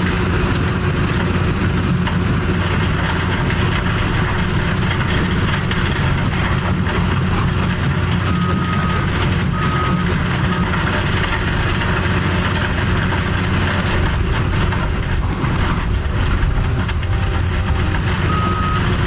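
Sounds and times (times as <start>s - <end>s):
diesel engine running: 0.0s - 19.0s
short high beeps: 8.3s - 13.9s, 15.4s - 19.0s.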